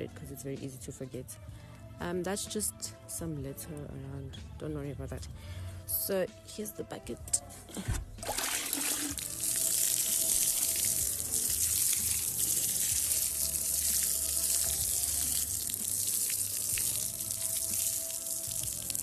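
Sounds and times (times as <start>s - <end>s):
water pouring from bucket: 8.2s - 19.0s.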